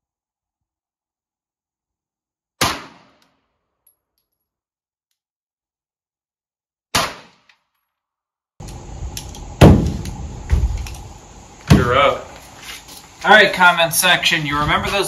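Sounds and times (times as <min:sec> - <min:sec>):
pistol shots: 0:02.6 - 0:03.2, 0:06.9 - 0:07.4, 0:09.6 - 0:10.0.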